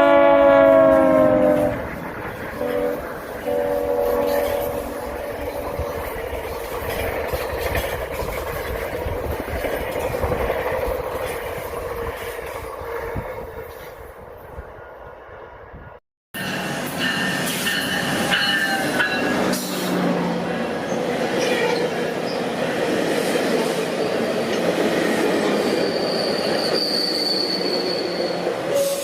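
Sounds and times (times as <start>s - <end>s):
train rumbling on rails: 0.0s - 29.0s
high squealing tones: 25.7s - 28.5s.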